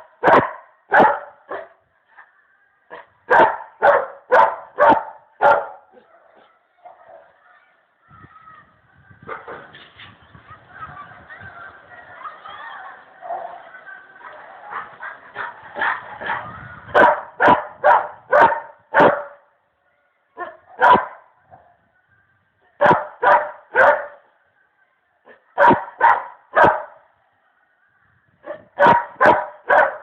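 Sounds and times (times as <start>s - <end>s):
dog barking: 0.2s - 1.8s, 3.3s - 7.3s, 14.7s - 19.4s, 20.4s - 21.2s, 22.8s - 24.2s, 25.3s - 27.0s, 28.5s - 30.0s.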